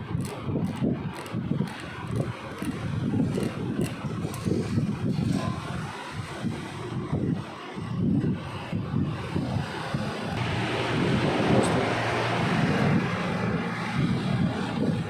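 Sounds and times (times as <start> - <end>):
air blower rushing noise: 8.7 - 15.0.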